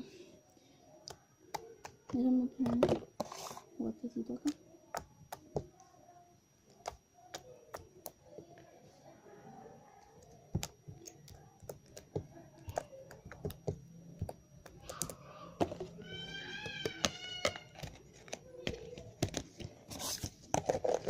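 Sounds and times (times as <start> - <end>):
slime clicking and popping: 4.4 - 5.7, 6.7 - 8.2, 10.3 - 15.2.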